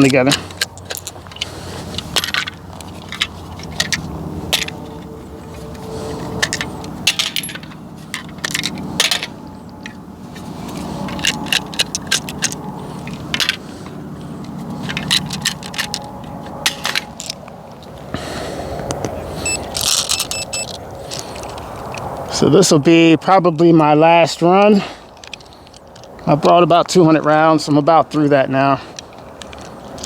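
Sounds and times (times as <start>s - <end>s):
steady low hum: 0.0s - 22.4s.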